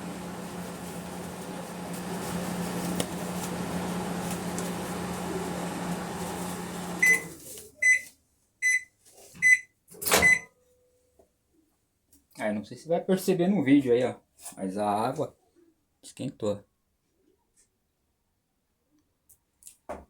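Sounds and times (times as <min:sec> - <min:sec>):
microwave oven humming: 0:00.0 - 0:07.4.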